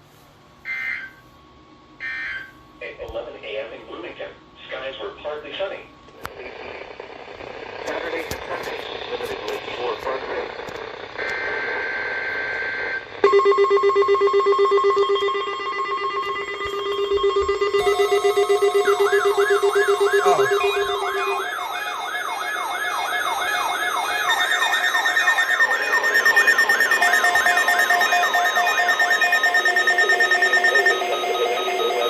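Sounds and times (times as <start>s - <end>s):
warbling siren-like alarm: 0.6s - 1.3s, 2.0s - 2.6s, 11.4s - 32.0s
rapidly pulsing beep: 12.7s - 32.0s
buzzing alert data burst: 13.2s - 32.0s.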